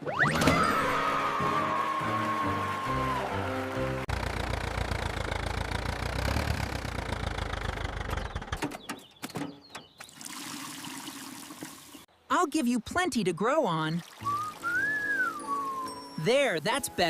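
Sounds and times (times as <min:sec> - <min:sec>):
engine low rumble: 0:04.0 - 0:08.6.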